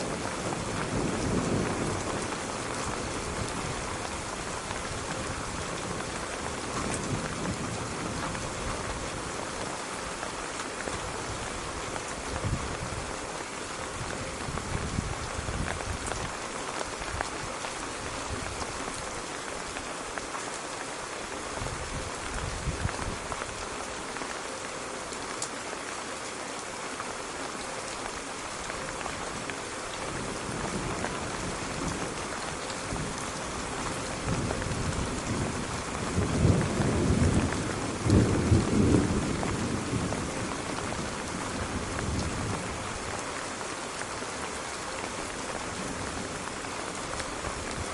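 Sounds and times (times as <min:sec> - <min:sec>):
heavy rain: 0:00.0 - 0:47.9
thunder rumble: 0:30.2 - 0:43.0.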